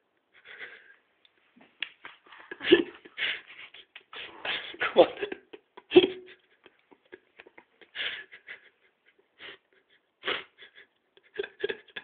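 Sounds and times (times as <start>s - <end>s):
person breathing heavily: 2.4s - 5.0s, 7.9s - 8.7s.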